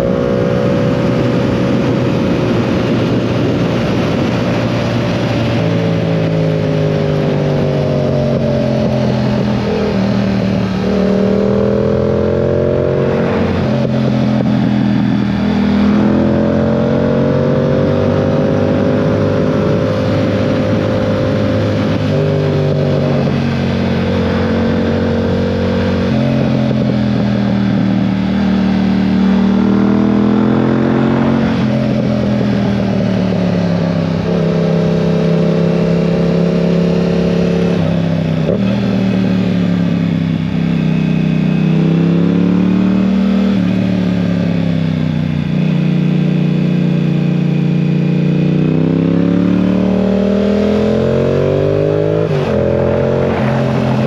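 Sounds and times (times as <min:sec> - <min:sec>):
wind rush: 0:00.0 - 0:17.0, 0:52.0 - 0:54.0
motorcycle engine revving: 0:00.0 - 0:54.0.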